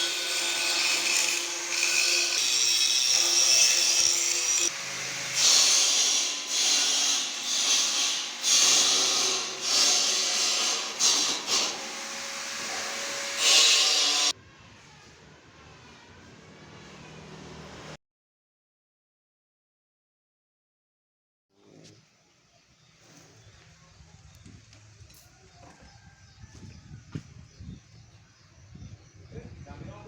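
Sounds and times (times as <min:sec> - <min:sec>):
power tool motor whine on steel: 0:00.0 - 0:14.3.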